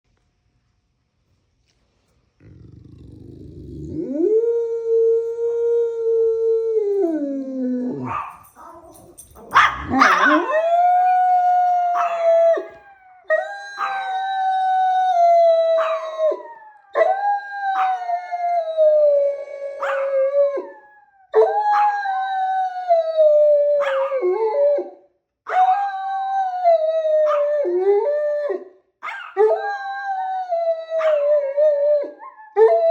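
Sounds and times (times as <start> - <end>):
dogs howling: 2.7 - 19.0
dogs yipping: 8.0 - 10.5.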